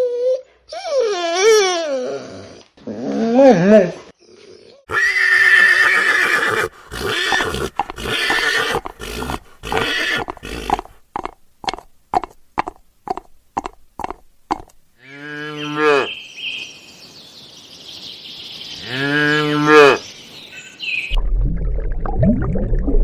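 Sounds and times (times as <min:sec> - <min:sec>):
horse whinnying: 0:04.9 - 0:11.0.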